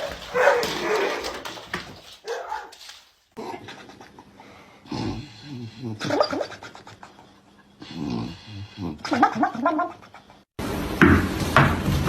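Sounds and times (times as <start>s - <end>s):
dog whining and grumbling: 5.0s - 7.1s.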